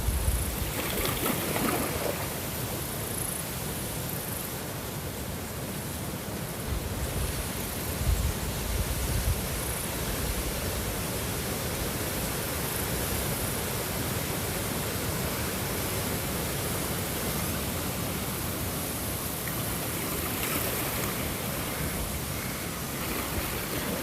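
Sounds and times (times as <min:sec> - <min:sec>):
rushing water: 0:00.0 - 0:24.0.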